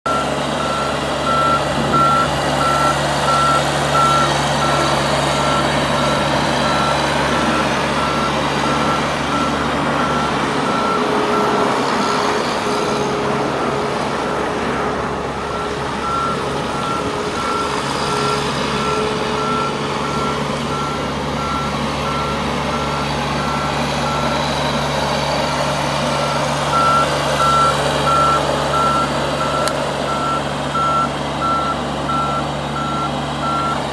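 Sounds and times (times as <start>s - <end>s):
backup alarm beeping: 0.1s - 11.1s, 26.3s - 33.8s
skid steer engine running: 0.1s - 33.9s.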